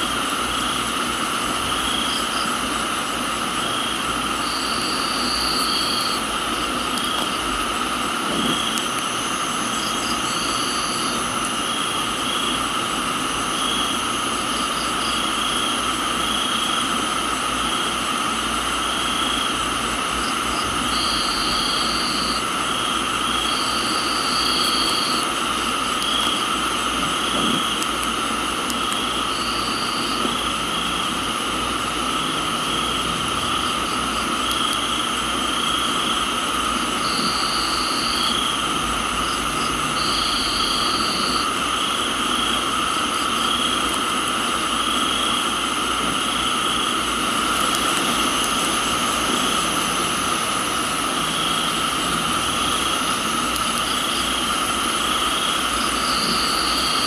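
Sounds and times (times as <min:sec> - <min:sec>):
crickets and insects chirping: 0:00.0 - 0:57.0
rain-like hiss: 0:00.0 - 0:57.0
higher insect trill: 0:18.7 - 0:27.9, 0:28.8 - 0:57.0.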